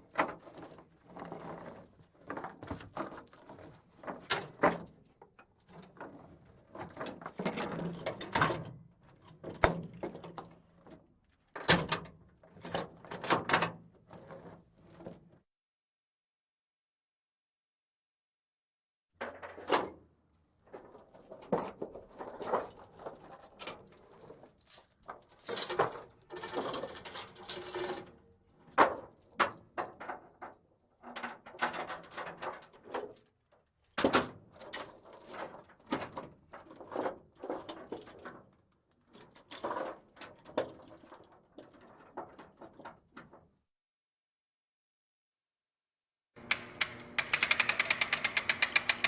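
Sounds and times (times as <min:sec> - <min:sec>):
ratchet clicking on steel chain: 0:46.4 - 0:49.0.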